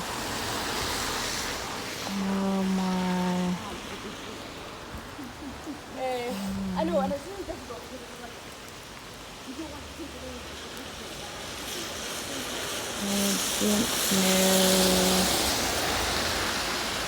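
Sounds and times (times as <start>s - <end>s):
heavy rain: 0.0s - 17.0s
person humming: 2.1s - 3.7s, 6.3s - 7.1s, 13.0s - 15.5s.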